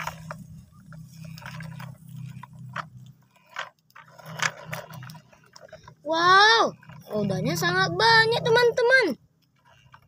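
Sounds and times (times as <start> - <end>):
faint low hum: 0.0 - 10.0
plastic toys clicking and scraping: 0.0 - 10.0.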